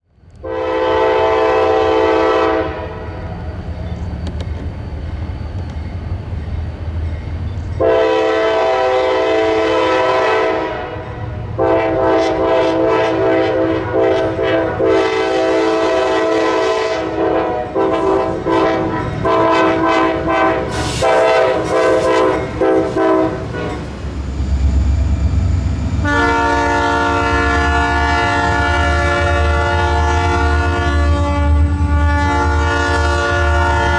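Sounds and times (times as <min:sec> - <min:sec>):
passing train rumble: 0:00.0 - 0:33.9
horn with different chord: 0:00.4 - 0:02.8, 0:26.0 - 0:33.9
locomotive air horn blasts: 0:00.4 - 0:03.2, 0:07.8 - 0:24.0, 0:26.0 - 0:33.9.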